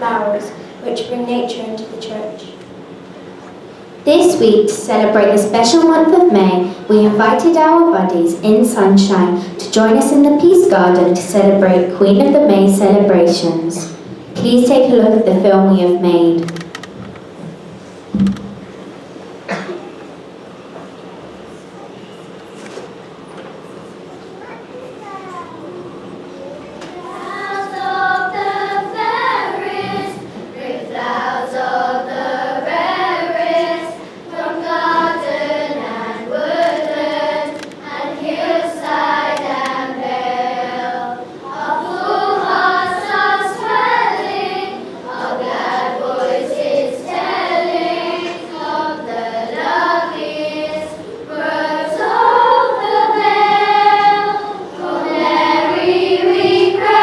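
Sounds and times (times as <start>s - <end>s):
children singing: 27.0s - 57.0s.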